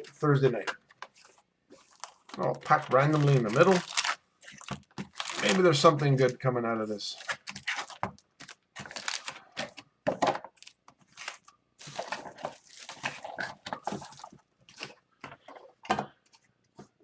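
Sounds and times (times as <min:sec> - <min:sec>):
card pack wrapper tearing: 0:01.9 - 0:05.8, 0:07.2 - 0:09.4.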